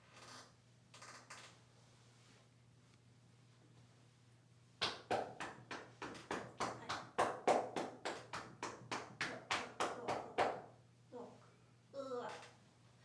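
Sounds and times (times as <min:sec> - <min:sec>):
hands slapping on body: 0:04.8 - 0:10.6.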